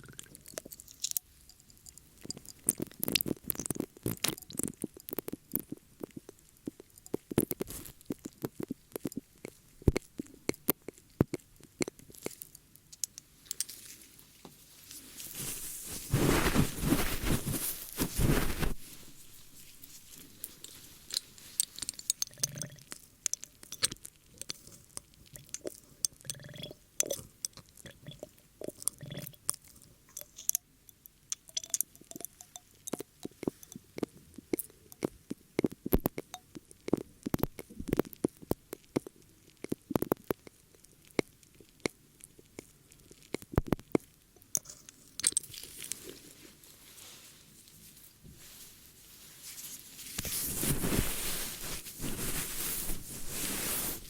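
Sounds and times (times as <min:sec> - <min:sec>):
ear-cleaning tool crackles and scratches: 0:07.0 - 0:09.2, 0:13.5 - 0:24.9, 0:44.6 - 0:54.0
dense rubbing on microphone: 0:15.0 - 0:21.0, 0:48.4 - 0:54.0.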